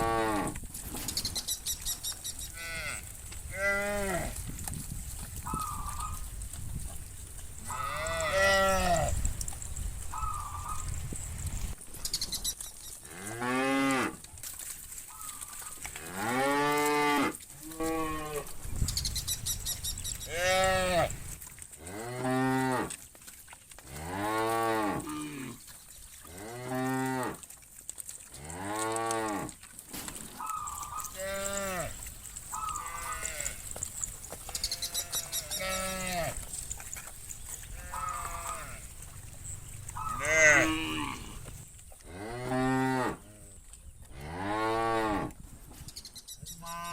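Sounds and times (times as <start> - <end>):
cow mooing: 0.0 - 0.6, 2.5 - 4.4, 7.6 - 9.2, 20.3 - 21.2, 30.6 - 33.8, 34.6 - 36.5, 37.7 - 43.3
fainter cows mooing: 0.0 - 0.6, 1.4 - 4.6, 7.0 - 11.7, 13.0 - 14.2, 15.2 - 18.8, 19.6 - 23.0, 23.8 - 25.7, 26.3 - 27.4, 28.3 - 45.4, 46.5 - 46.9.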